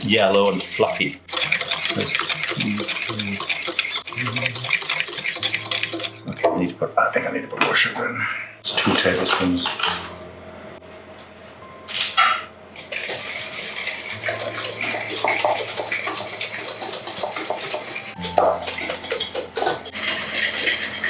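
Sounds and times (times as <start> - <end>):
whisk clattering against bowl: 0.0 - 6.5, 12.8 - 21.0.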